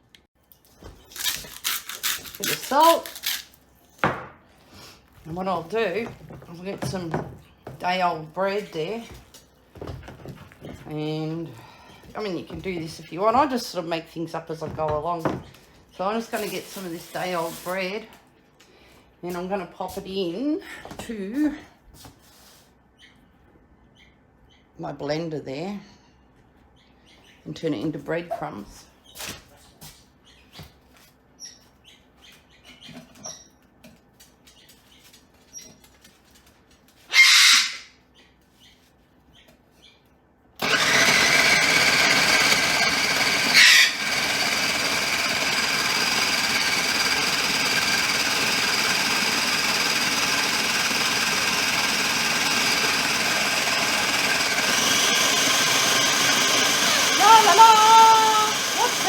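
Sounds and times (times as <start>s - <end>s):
blender whining: 2.0s - 3.4s, 40.6s - 59.0s.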